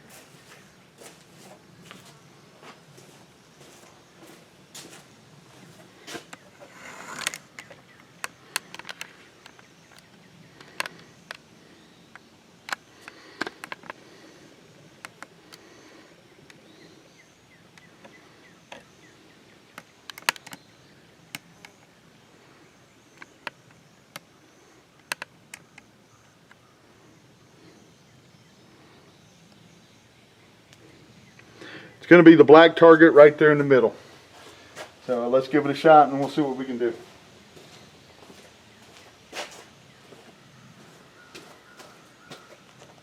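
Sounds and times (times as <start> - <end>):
rustle: 0.0 - 31.9
faint outdoor background: 0.0 - 43.0.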